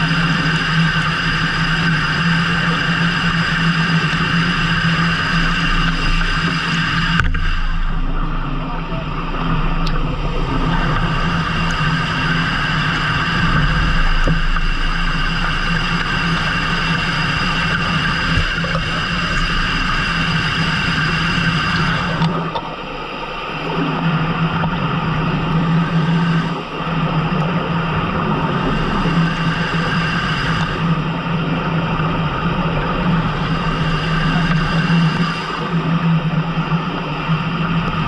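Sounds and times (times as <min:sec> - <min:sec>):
boat engine running: 0:00.0 - 0:38.0.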